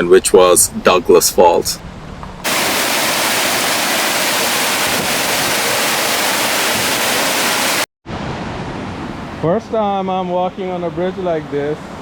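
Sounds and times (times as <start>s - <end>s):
rush of flowing water: 2.4s - 9.3s.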